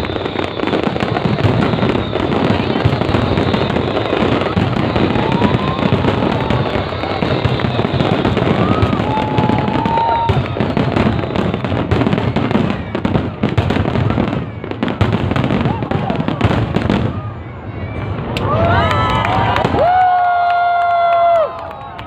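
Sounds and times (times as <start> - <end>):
firework whistles: 0.0 - 18.8
crowd noise: 0.0 - 22.0
fireworks bangs and crackles: 0.0 - 22.0.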